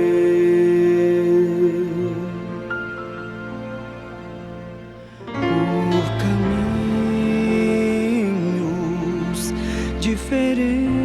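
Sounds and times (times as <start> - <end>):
soft instrumental backing: 0.0 - 11.0
man singing a long note: 5.3 - 11.0.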